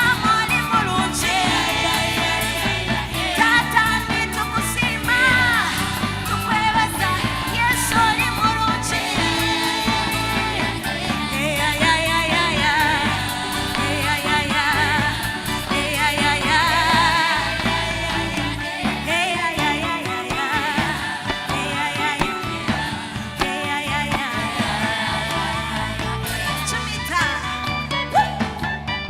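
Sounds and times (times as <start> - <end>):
people singing with vibrato: 0.0 - 28.8
live band playing: 0.0 - 29.0.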